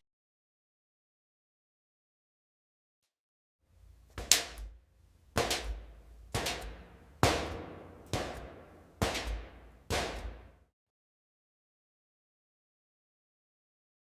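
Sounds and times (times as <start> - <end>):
footsteps on metal: 4.0 - 10.6.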